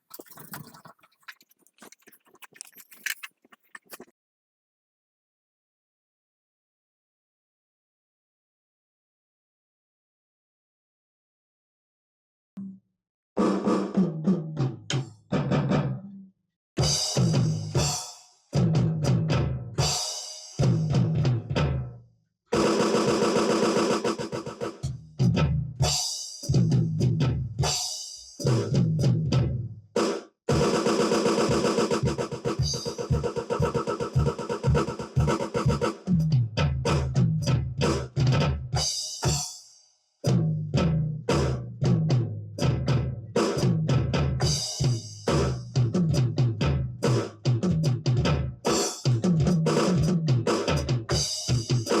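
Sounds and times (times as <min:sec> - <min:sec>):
drum kit playing with music: 0:13.4 - 0:16.0, 0:16.8 - 0:21.9, 0:22.6 - 0:52.0.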